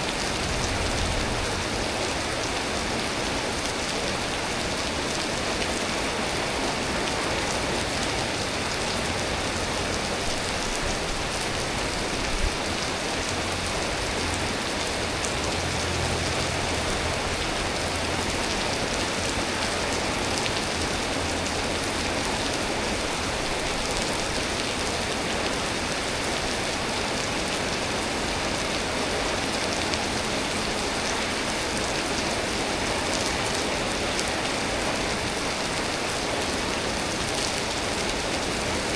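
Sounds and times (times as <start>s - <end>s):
heavy rain pattering: 0.0s - 38.9s.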